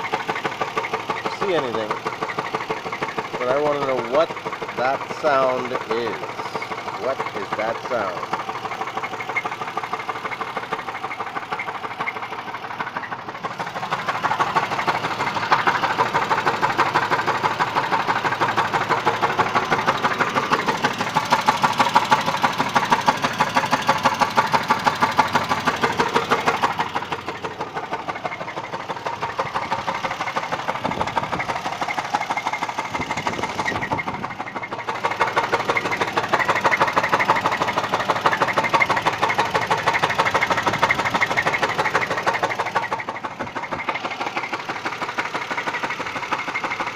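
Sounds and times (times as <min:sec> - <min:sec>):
engine running with rapid knocking: 0:00.0 - 0:46.9.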